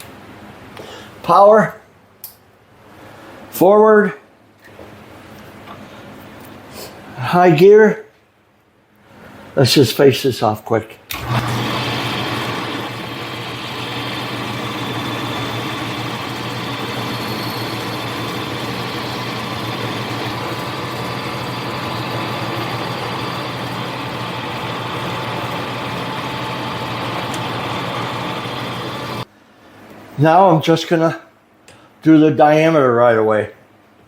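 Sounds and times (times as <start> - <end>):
lathe motor humming and whining: 11.2 - 29.3.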